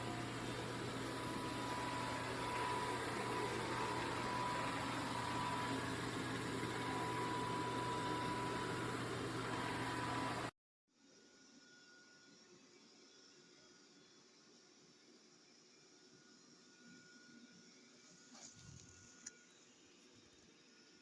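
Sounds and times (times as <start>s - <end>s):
robot vacuum whirring: 0.0s - 10.5s
thin steady whine: 0.0s - 21.0s.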